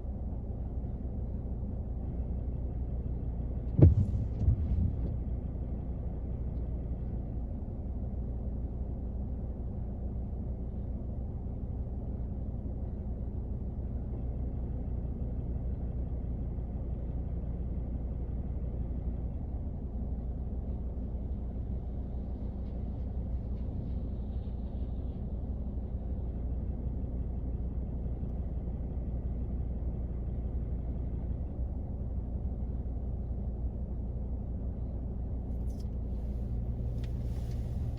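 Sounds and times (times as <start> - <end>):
rain rumble inside car: 3.3 - 7.3, 36.1 - 37.9.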